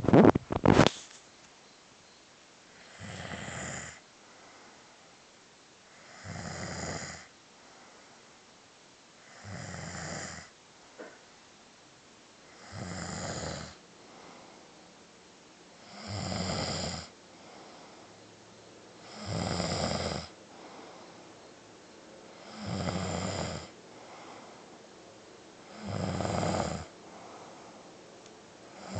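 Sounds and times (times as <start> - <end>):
person snoring: 2.8 - 4.0, 6.0 - 7.3, 9.2 - 10.5, 12.5 - 14.5, 15.8 - 18.0, 19.0 - 21.1, 22.3 - 24.6, 25.6 - 27.7.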